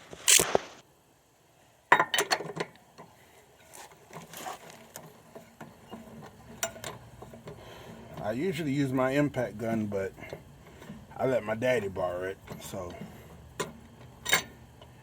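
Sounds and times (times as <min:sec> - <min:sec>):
tire iron clanking on lug nut: 0:12.4 - 0:14.6.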